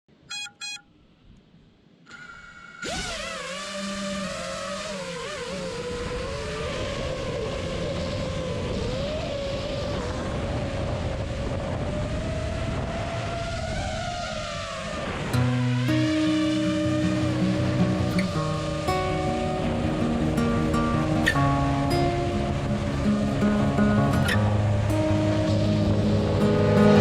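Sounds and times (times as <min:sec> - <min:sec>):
quadcopter motors whining: 0:02.1 - 0:12.8
rushing air noise: 0:02.1 - 0:27.0.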